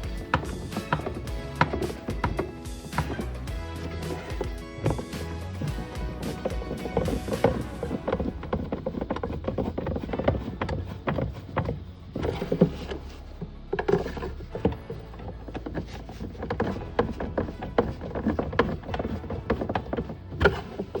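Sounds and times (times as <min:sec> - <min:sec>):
knocks and clatter: 0:00.0 - 0:13.2.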